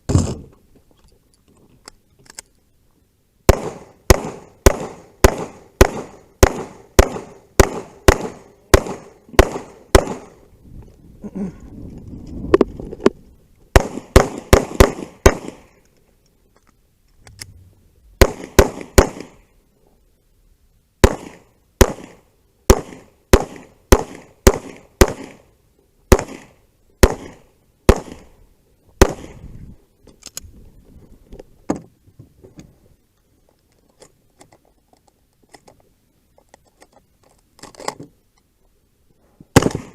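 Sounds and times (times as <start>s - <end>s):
gunshots in quick bursts: 3.5s - 10.4s, 13.7s - 15.7s, 18.2s - 19.4s, 21.0s - 25.5s, 26.1s - 28.4s, 29.0s - 29.4s, 39.5s - 39.9s.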